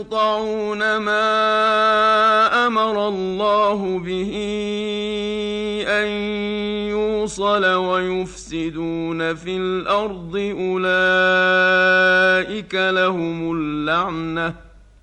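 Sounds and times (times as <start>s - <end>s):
man reciting melodically: 0.0s - 15.0s.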